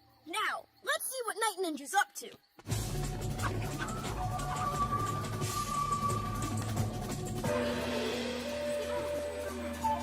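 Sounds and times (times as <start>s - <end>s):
background music score: 2.7s - 10.0s.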